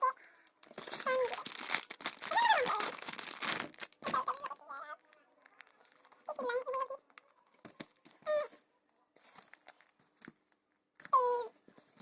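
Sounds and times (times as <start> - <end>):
plastic packaging crinkling: 0.1 - 8.3, 9.2 - 10.4.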